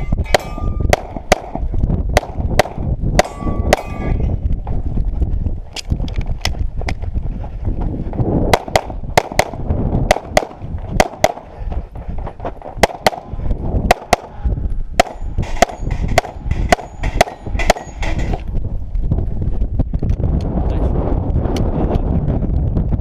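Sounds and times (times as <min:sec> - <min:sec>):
pistol shots: 0:00.3 - 0:01.6, 0:08.5 - 0:11.5, 0:12.8 - 0:13.3, 0:13.9 - 0:14.4, 0:15.0 - 0:18.2.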